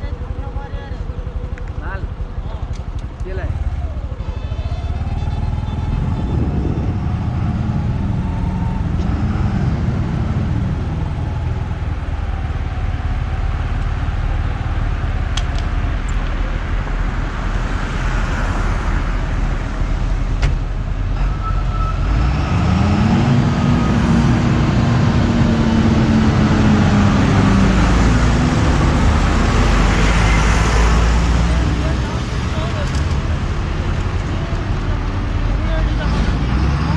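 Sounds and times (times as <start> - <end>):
vehicle engine and road noise: 0.0 - 36.9
stronger engine note: 3.4 - 15.2, 22.1 - 33.7.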